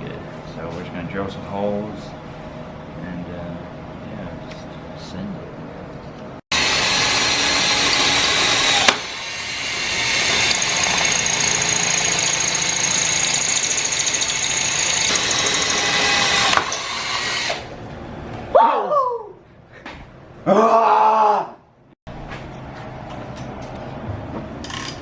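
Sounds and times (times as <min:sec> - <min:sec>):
electric drill drilling metal: 0:06.5 - 0:17.7.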